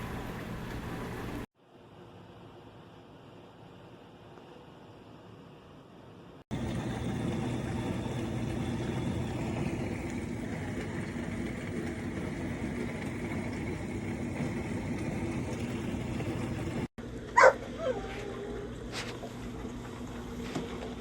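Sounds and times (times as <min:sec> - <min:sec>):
dishwasher running: 0:00.0 - 0:01.5, 0:06.5 - 0:21.0.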